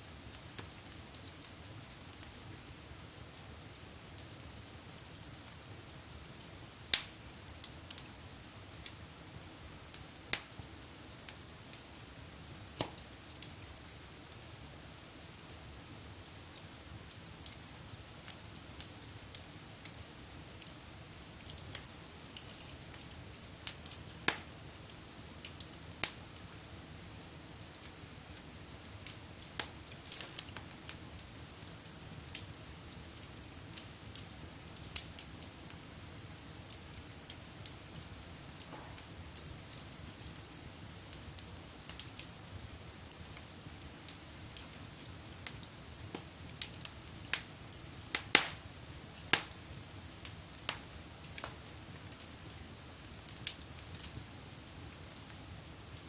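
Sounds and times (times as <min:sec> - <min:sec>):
soft steady hiss: 0:00.0 - 0:56.0
wood fire crackling: 0:00.0 - 0:56.0
fire pops: 0:06.8 - 0:08.1, 0:09.9 - 0:10.7, 0:12.6 - 0:13.6, 0:21.4 - 0:24.5, 0:29.0 - 0:32.5, 0:36.7 - 0:40.6, 0:45.4 - 0:47.5, 0:48.1 - 0:49.6, 0:50.6 - 0:52.2.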